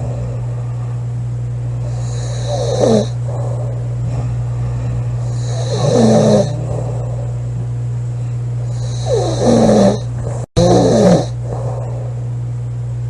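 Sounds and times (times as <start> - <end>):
steady low hum: 0.0 - 13.0
woman snoring: 1.8 - 7.4, 8.6 - 12.2.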